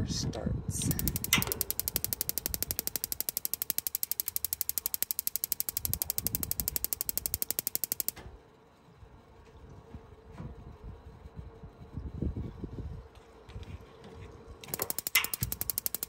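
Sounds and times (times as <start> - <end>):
igniter sparking clicks: 0.8 - 8.3, 14.6 - 16.0.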